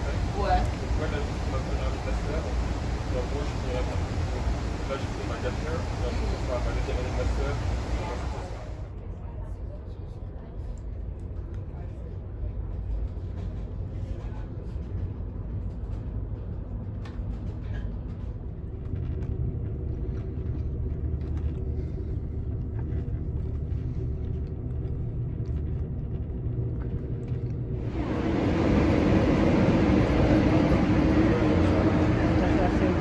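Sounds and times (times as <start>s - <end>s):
loud rushing noise: 0.0s - 8.8s, 27.8s - 33.0s
train rumble and hum: 0.0s - 33.0s.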